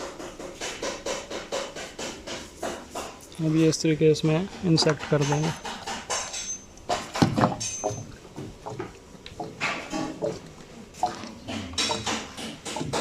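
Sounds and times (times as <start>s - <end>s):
liquid glugging from bottle: 7.0s - 13.0s.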